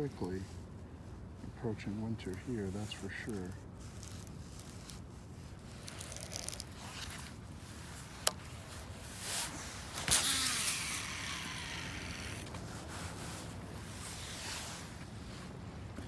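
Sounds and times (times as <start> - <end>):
low outdoor background: 0.0 - 16.0
fishing reel whirring: 5.8 - 6.7, 10.0 - 12.5.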